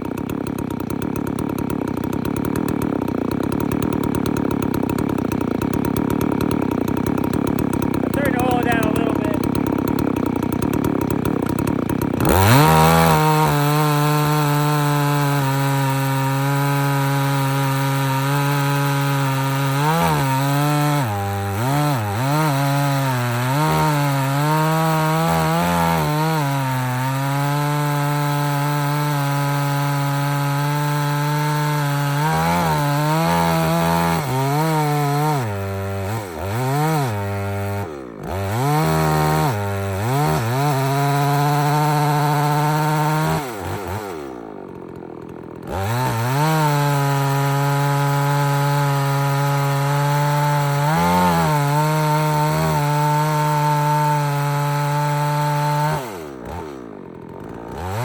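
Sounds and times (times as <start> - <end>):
chainsaw cutting log: 0.0 - 58.0.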